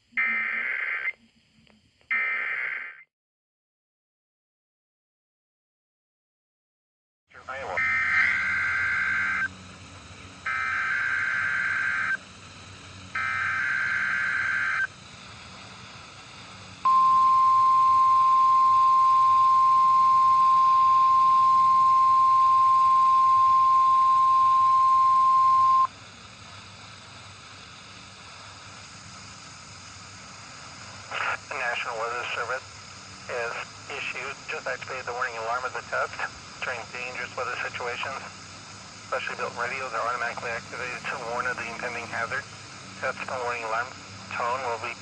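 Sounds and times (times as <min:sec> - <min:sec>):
faint radio hiss: 0:00.0 - 0:02.6, 0:07.3 - 0:45.0
harsh digital data bursts: 0:00.2 - 0:01.2, 0:02.1 - 0:03.0, 0:07.5 - 0:15.0, 0:16.4 - 0:25.9
steady warning alarm tone: 0:07.4 - 0:15.0, 0:16.4 - 0:25.9.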